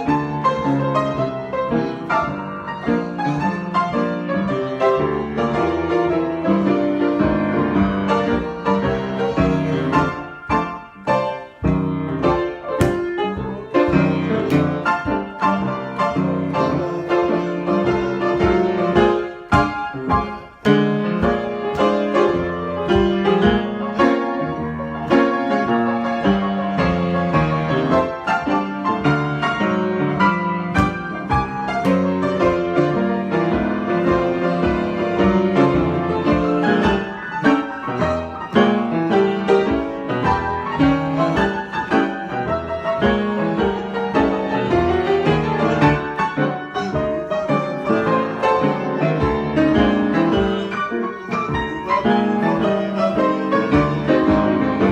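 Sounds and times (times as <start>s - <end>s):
piano improvisation: 0.0s - 54.9s.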